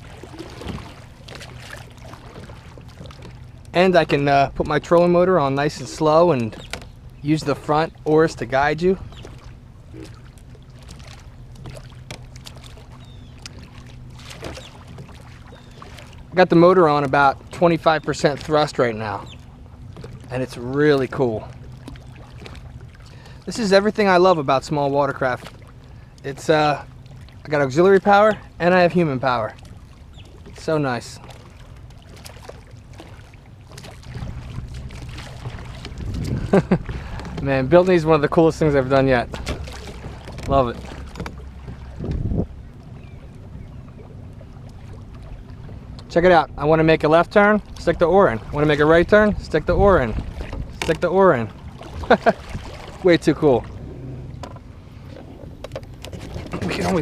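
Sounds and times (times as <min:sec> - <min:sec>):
knocks from boat and oars: 0:00.0 - 0:23.2, 0:25.1 - 0:28.4, 0:29.5 - 0:46.3, 0:47.7 - 0:57.0
low hum: 0:00.0 - 0:57.0
water splashing: 0:00.0 - 0:57.0.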